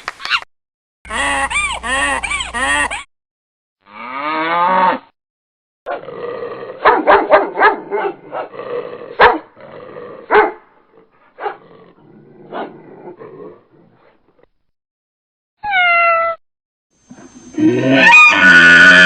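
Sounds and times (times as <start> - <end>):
low mooing call: 3.8 - 5.1, 17.5 - 19.0
dog growling: 5.9 - 14.5
dog barking: 6.8 - 8.5, 9.1 - 9.5, 10.3 - 10.7, 11.3 - 11.6, 12.5 - 12.8.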